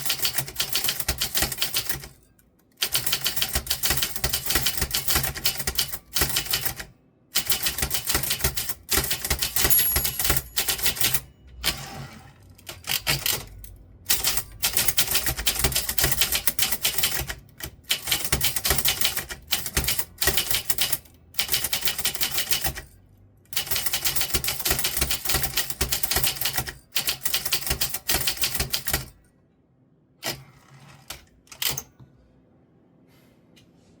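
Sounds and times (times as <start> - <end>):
typewriter key strikes: 7.4 - 11.2.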